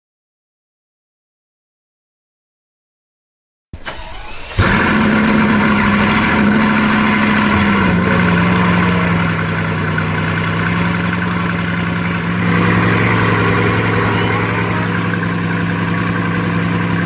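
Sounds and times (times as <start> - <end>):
car engine starting and idling: 3.8 - 17.0.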